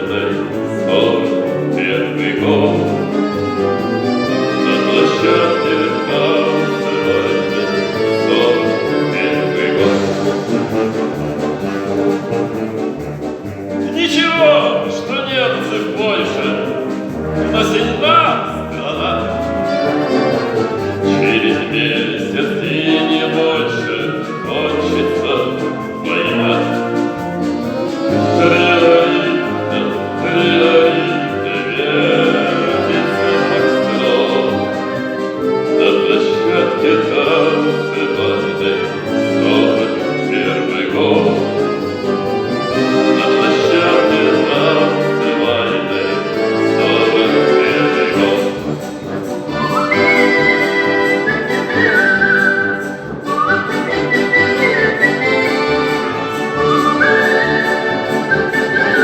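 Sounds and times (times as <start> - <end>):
band with brass and bass: 0.0 - 59.0
person whistling a melody: 49.5 - 59.0.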